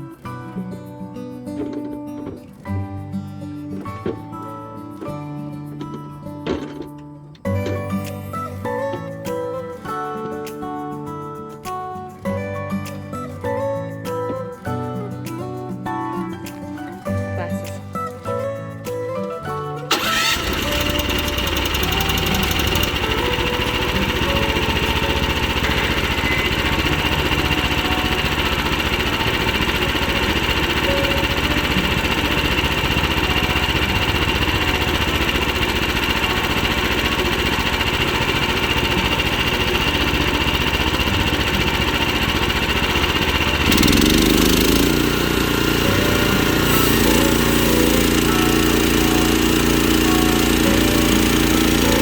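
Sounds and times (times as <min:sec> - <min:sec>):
sawmill gas engine running: 0:19.9 - 0:52.0.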